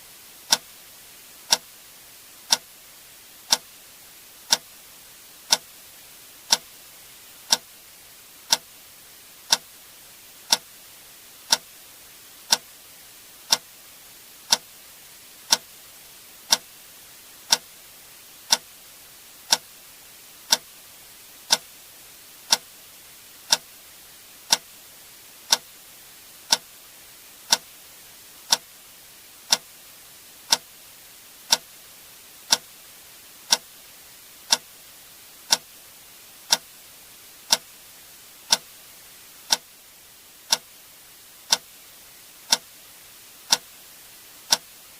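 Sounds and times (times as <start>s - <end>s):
faint steady hiss: 0.0s - 44.9s.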